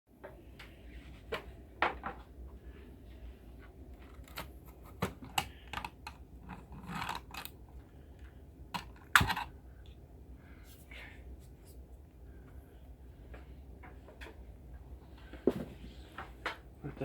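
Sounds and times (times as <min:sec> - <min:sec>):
low steady hum: 0:00.1 - 0:17.0
objects clicking and knocking: 0:04.0 - 0:07.6, 0:08.7 - 0:09.6.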